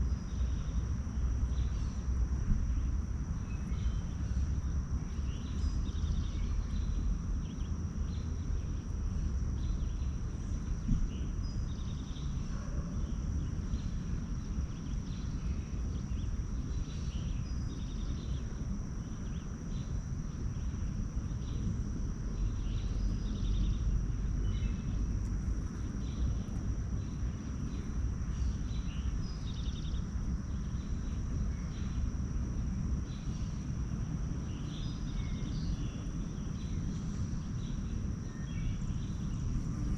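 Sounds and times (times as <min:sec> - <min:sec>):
small birds chirping: 0:05.2 - 0:08.9, 0:13.4 - 0:21.7, 0:22.4 - 0:32.1.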